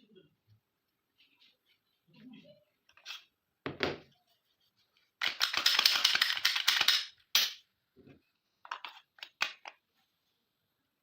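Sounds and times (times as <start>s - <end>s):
pistol parts clicking and clattering: 5.2s - 7.6s.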